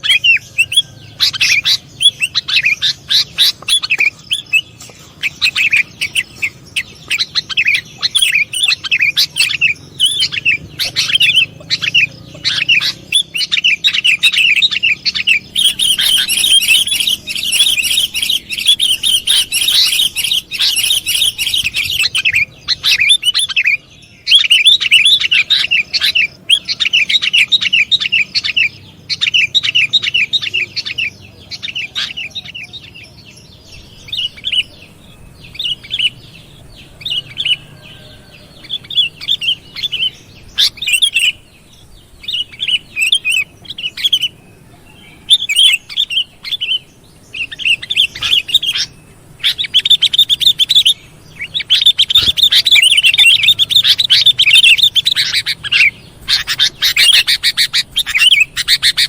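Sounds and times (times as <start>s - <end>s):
bulbul chattering chirps: 0.0s - 59.0s.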